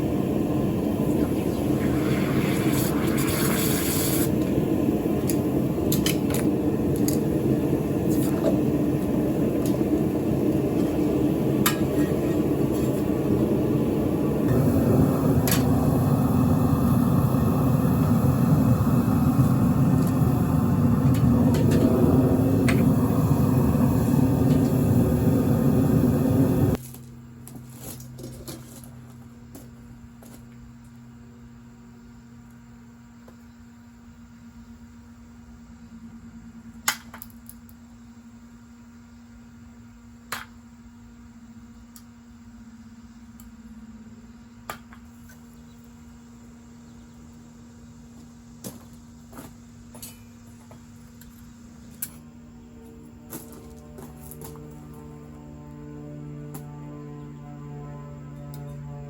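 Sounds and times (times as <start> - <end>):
furnace burner rushing: 0.0 - 26.8
faint hum: 0.0 - 59.0.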